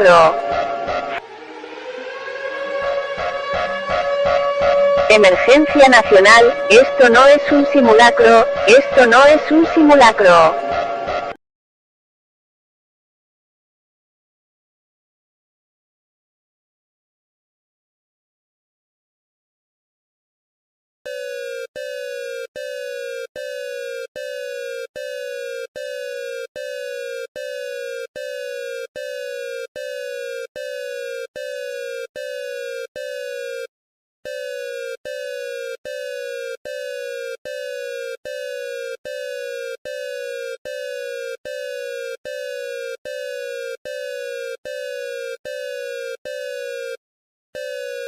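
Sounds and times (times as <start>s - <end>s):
falling electronic alarm beeps: 0.0s - 11.4s, 21.1s - 33.7s, 34.3s - 47.0s, 47.6s - 48.0s.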